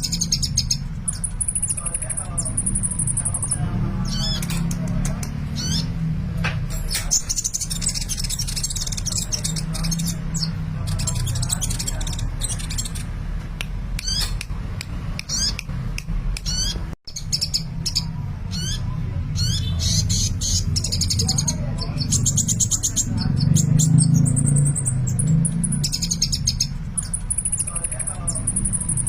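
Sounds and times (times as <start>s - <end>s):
bird chirping and trilling: 0.0s - 13.3s, 13.9s - 14.5s, 15.2s - 29.0s.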